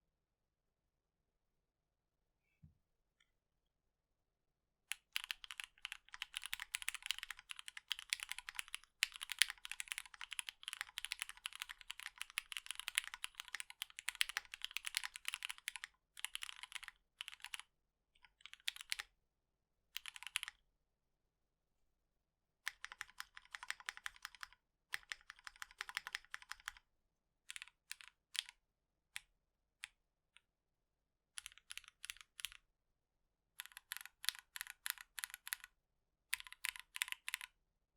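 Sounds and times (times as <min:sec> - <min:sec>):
typing on mechanical keyboard: 0:04.9 - 0:17.6, 0:18.2 - 0:19.1, 0:20.0 - 0:20.6, 0:22.7 - 0:26.8, 0:27.5 - 0:28.6, 0:31.4 - 0:32.6, 0:33.6 - 0:35.7, 0:36.3 - 0:37.6.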